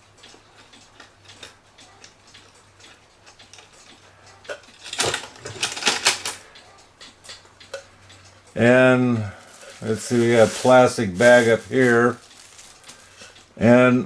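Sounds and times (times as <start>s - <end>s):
clock ticking and small clicks: 0.0s - 11.0s
chain rattling and rustling: 4.7s - 6.4s.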